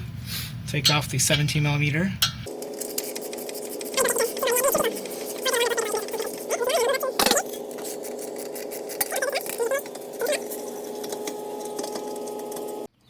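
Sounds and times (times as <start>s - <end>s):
steady hum: 0.0s - 12.9s.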